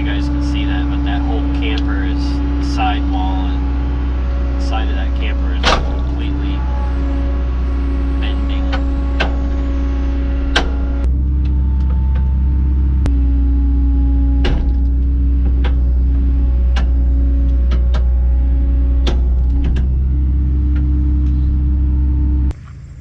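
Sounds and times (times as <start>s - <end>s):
excavator diesel hum: 0.0s - 23.0s
hydraulic whine: 0.0s - 23.0s
metallic clanks and clicks: 4.6s - 13.1s, 14.4s - 22.5s.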